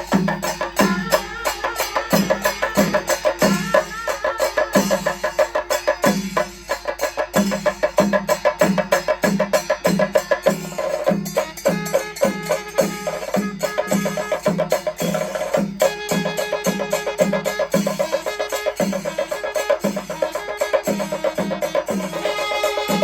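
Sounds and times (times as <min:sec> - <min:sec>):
low drum beat: 0:00.0 - 0:11.8
fast dense drum strokes: 0:00.0 - 0:23.0.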